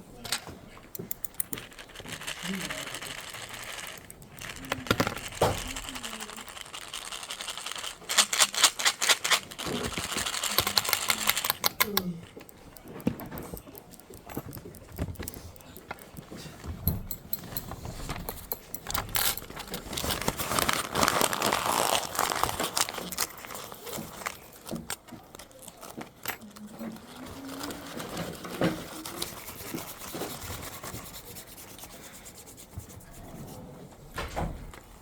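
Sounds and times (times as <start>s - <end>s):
rustling and scraping: 0.2s - 35.0s
clicks and taps: 9.9s - 20.2s.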